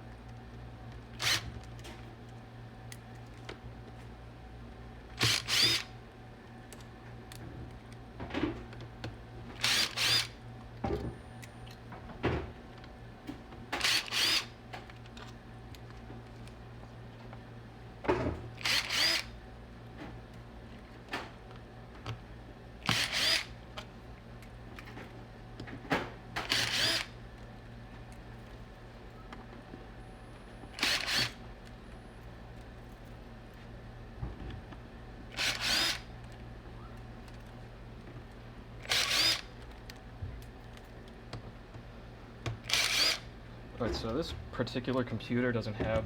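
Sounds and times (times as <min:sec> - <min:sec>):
cordless impact driver bursts: 0:01.2 - 0:01.5, 0:05.2 - 0:05.9, 0:09.6 - 0:10.4, 0:13.8 - 0:14.5, 0:18.6 - 0:19.3, 0:22.8 - 0:23.6, 0:26.4 - 0:27.2, 0:30.8 - 0:31.4, 0:35.3 - 0:36.1, 0:38.8 - 0:39.5, 0:42.6 - 0:43.3.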